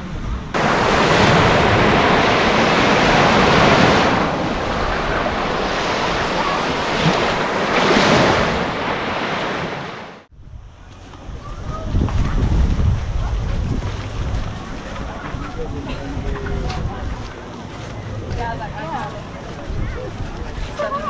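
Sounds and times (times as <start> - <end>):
wind on microphone: 0.0 - 21.0
waves washing onto sand: 0.6 - 10.3.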